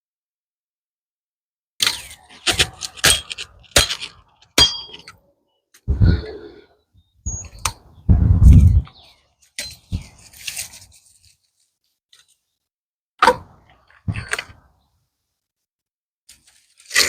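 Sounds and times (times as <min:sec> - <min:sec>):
branches rustling: 0:09.9 - 0:12.4.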